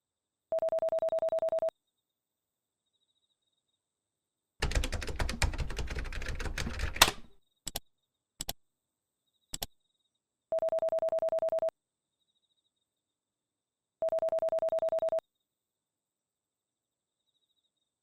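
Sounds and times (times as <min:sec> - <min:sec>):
rapid keyboard typing: 0:04.6 - 0:07.8
single clicks: 0:07.0 - 0:07.8.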